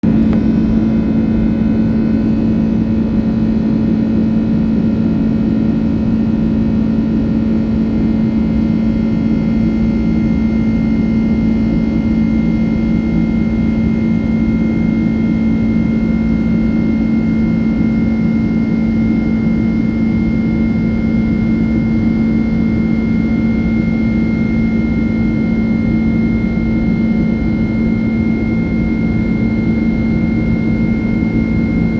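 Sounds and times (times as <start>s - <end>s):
airplane cabin engine drone: 0.0s - 31.9s
constant low hum: 0.0s - 31.9s
faint high whine: 19.2s - 31.9s.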